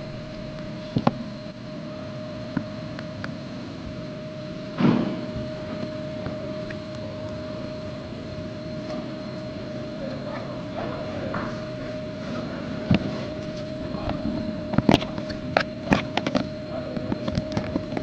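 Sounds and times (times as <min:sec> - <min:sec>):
steady mechanical hum: 0:00.0 - 0:18.0
loud thud: 0:04.7 - 0:05.5.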